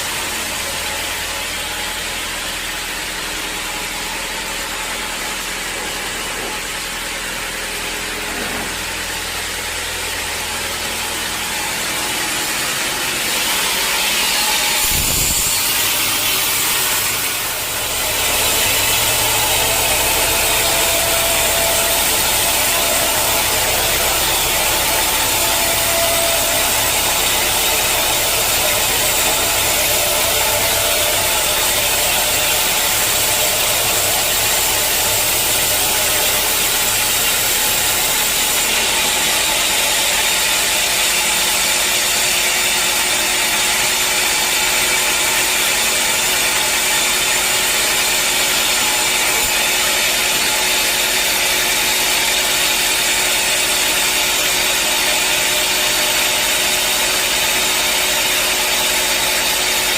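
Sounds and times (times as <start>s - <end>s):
sawmill machinery running: 0.0s - 59.9s.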